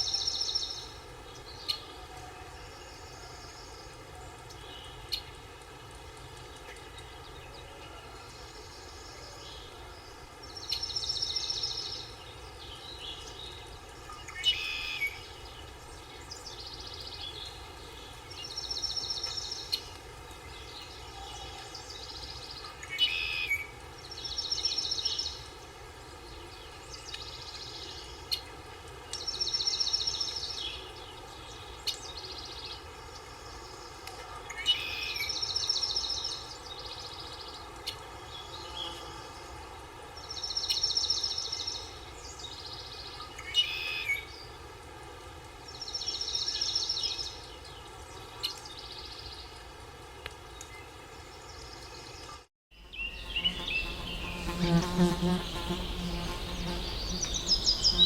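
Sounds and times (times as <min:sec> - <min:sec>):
steady background hiss: 0:00.0 - 0:58.0
bird chirps: 0:52.8 - 0:58.0.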